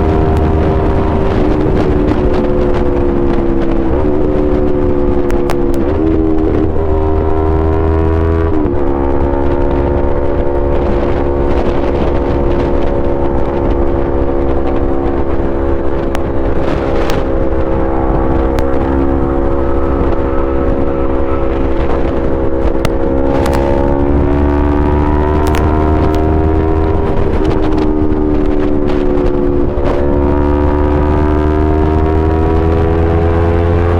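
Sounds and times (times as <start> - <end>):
motorcycle engine running: 0.0 - 33.9.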